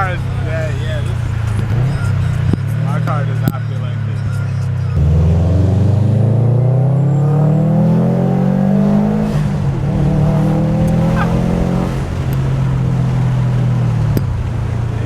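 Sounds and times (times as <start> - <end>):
car engine accelerating: 0.0 - 15.0.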